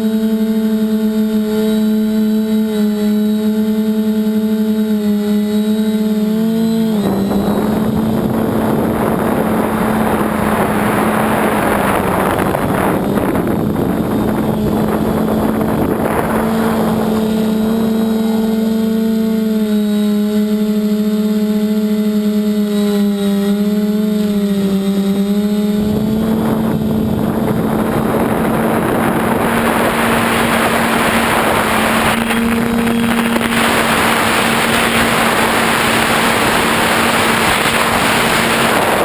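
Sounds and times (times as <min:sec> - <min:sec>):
drone propellers humming: 0:00.0 - 0:39.0
loud rushing noise: 0:07.8 - 0:19.4, 0:26.2 - 0:39.0.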